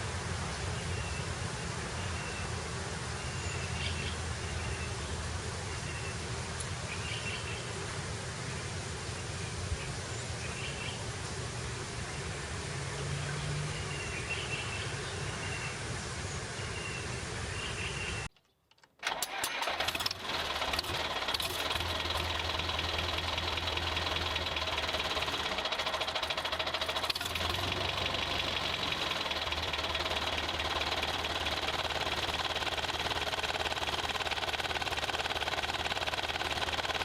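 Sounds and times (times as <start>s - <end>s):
small motor rattling: 19.0s - 37.0s.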